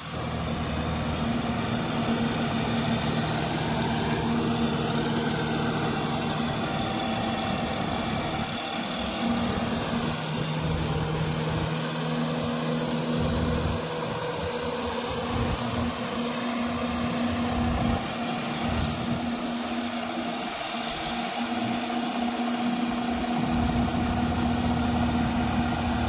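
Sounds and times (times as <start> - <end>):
combine harvester running: 0.0 - 26.0.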